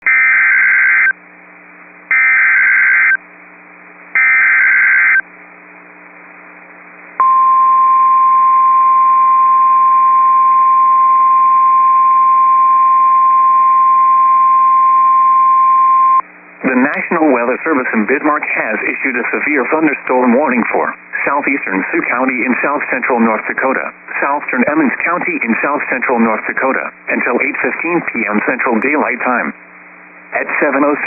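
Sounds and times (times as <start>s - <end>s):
steady alarm tone: 2.1s - 3.2s, 4.2s - 5.2s.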